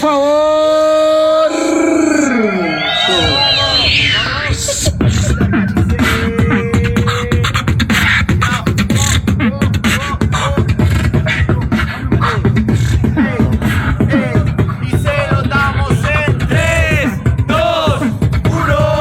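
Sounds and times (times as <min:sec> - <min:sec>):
person beatboxing: 0:00.8 - 0:19.0
sung pitch glides: 0:01.5 - 0:05.0.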